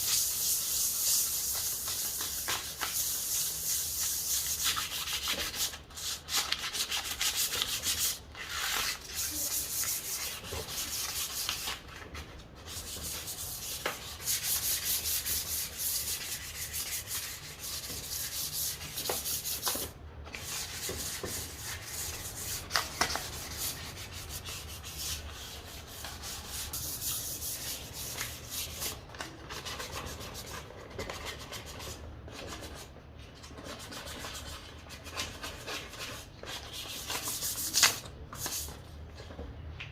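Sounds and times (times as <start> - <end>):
sandpaper rubbing on wood: 0.0 - 11.8, 12.7 - 19.8, 20.4 - 29.0.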